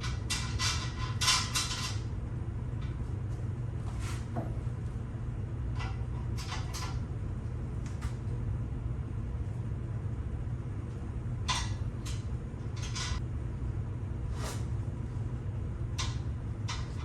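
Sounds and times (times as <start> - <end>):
steady low hum: 0.0 - 17.0
metal parts scraping and clacking: 0.2 - 2.0.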